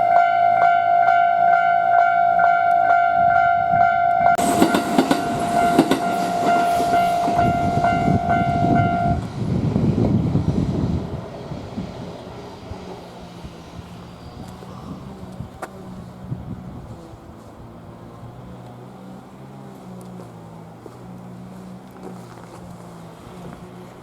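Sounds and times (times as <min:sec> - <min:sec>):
level-crossing warning bell dinging: 0:00.0 - 0:09.4
train passing over crossing: 0:00.0 - 0:24.0.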